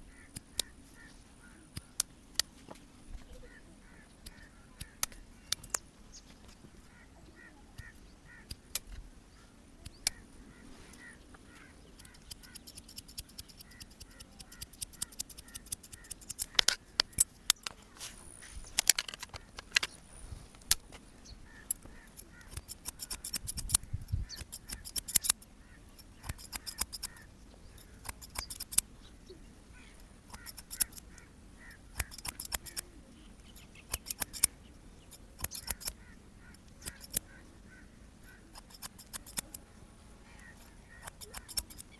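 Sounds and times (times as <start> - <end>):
scissors snipping hair: 10.9 - 19.0, 21.6 - 28.9, 29.8 - 34.5, 35.1 - 36.0, 36.6 - 37.4, 38.2 - 39.6, 40.4 - 41.9.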